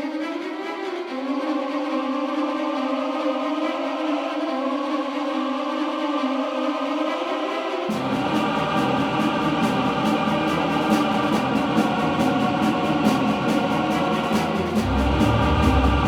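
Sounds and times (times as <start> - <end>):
choir-like voices: 0.0 - 16.0
low bass: 14.8 - 16.0.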